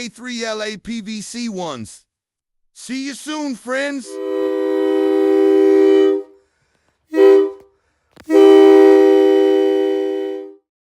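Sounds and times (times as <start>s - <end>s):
air horn chord blasts: 4.1s - 6.4s, 7.1s - 7.7s, 8.3s - 10.6s
click: 8.1s - 8.3s.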